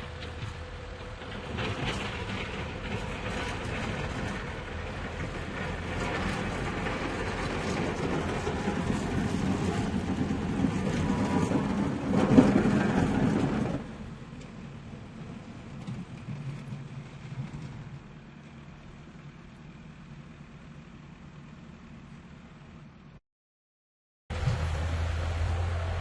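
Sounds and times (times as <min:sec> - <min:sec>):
tractor engine running: 0:00.0 - 0:23.2, 0:24.3 - 0:26.0.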